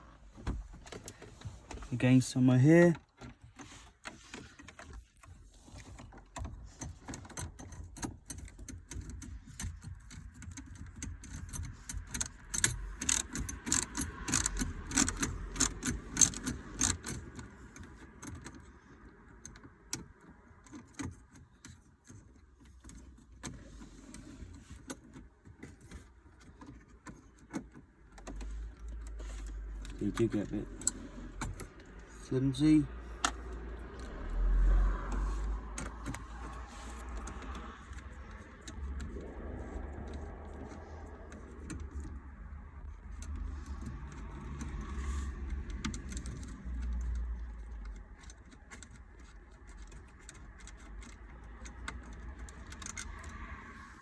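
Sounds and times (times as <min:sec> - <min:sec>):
screws clicking and rattling: 0:06.4 - 0:53.8.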